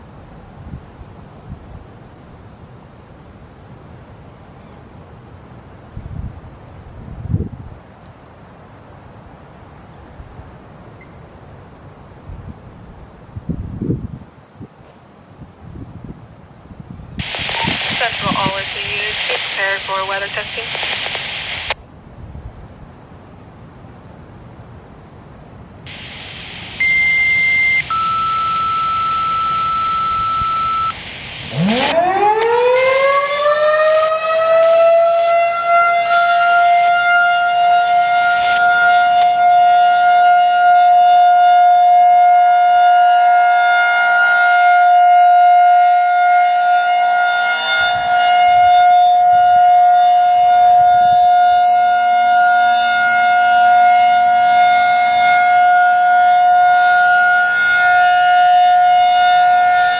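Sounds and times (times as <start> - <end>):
radio tones: 17.2 - 21.8, 25.9 - 32.1
scanner radio hiss: 17.2 - 21.8, 25.9 - 31.9
rotating siren winding up: 26.6 - 33.3.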